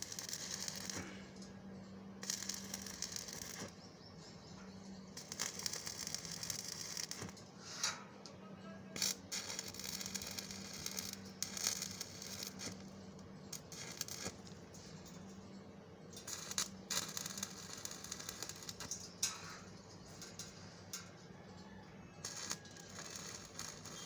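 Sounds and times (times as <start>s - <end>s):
arc welding crackling: 0.0s - 1.4s, 2.2s - 3.9s, 5.1s - 8.0s, 8.9s - 15.4s, 16.1s - 21.1s, 22.2s - 24.0s
welding machine humming: 0.0s - 1.5s, 2.1s - 3.8s, 5.1s - 8.0s, 8.9s - 15.5s, 16.1s - 21.2s, 22.2s - 24.0s.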